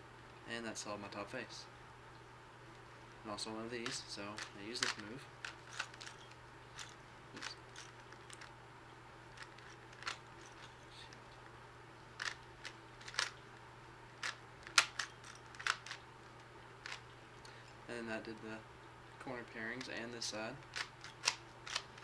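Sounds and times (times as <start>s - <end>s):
plastic puzzle cube clicking: 3.8s - 6.2s, 12.2s - 13.4s, 14.2s - 16.0s, 20.6s - 22.0s.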